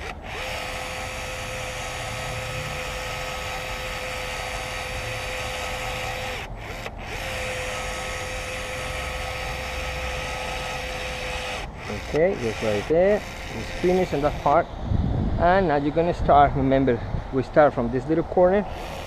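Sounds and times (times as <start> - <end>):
caulking gun motor whirring: 0.0 - 14.8, 18.7 - 19.0.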